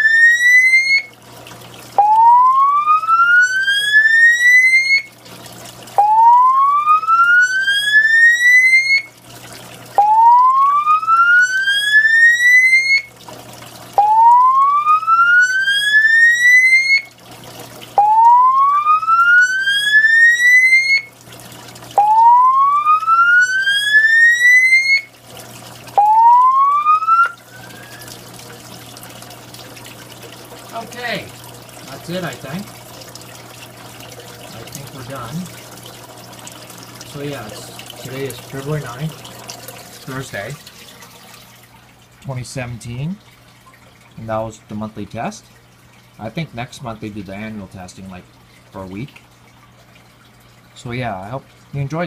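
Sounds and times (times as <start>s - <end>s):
fire alarm whooping tone: 0.0s - 1.2s, 2.0s - 5.2s, 6.0s - 9.2s, 10.0s - 13.2s, 14.0s - 17.2s, 18.0s - 21.2s, 22.0s - 25.1s, 25.9s - 28.3s.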